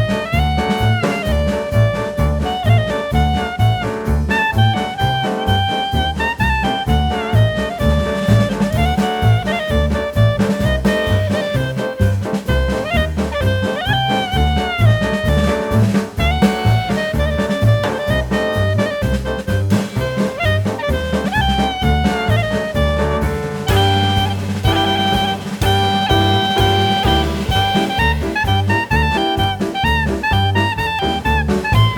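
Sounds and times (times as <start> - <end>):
instrumental jazz music: 0.0 - 31.9
saxophone melody: 0.0 - 31.9
steady drum beat: 0.0 - 31.9.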